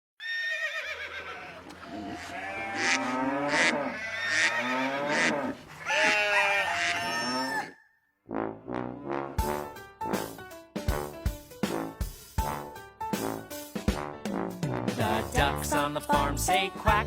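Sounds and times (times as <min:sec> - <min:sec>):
farm animal cries: 0:00.2 - 0:08.0.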